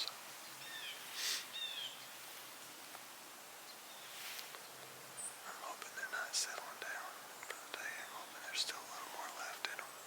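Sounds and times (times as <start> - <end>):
bird chirping: 0.0 - 2.2, 3.6 - 10.0
soft rustle: 0.0 - 3.1, 3.7 - 5.0.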